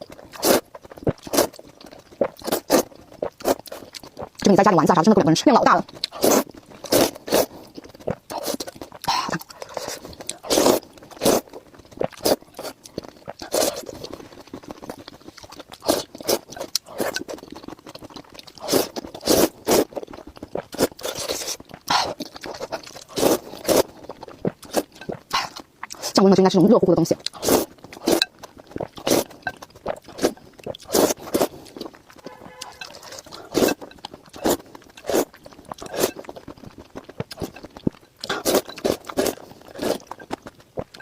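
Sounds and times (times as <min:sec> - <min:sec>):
chewing: 0:00.0 - 0:05.0, 0:05.8 - 0:26.2, 0:27.0 - 0:41.0
person slurping noodles: 0:00.4 - 0:01.6, 0:06.1 - 0:11.4, 0:13.4 - 0:14.4, 0:18.6 - 0:19.9, 0:20.7 - 0:23.9, 0:27.3 - 0:28.2, 0:29.0 - 0:29.4, 0:30.0 - 0:36.2, 0:38.2 - 0:40.1.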